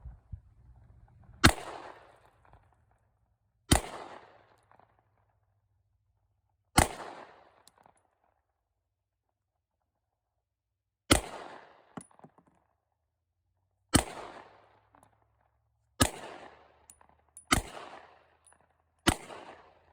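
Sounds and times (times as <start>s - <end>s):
pistol shots with echo: 1.4s - 2.6s, 3.7s - 4.5s, 6.8s - 7.6s, 11.1s - 12.2s, 13.9s - 14.7s, 16.0s - 18.2s, 19.1s - 19.9s.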